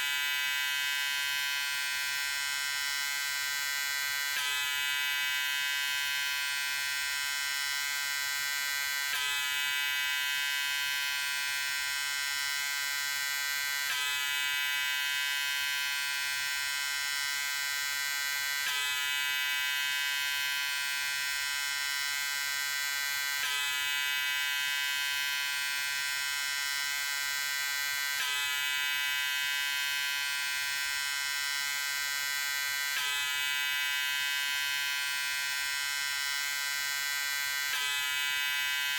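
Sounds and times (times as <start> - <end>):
electric razor buzzing: 0.0 - 38.9.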